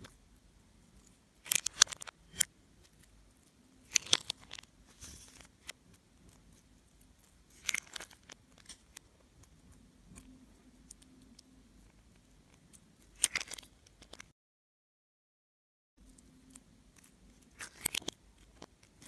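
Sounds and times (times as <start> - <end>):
slime squish: 16.2 - 19.0.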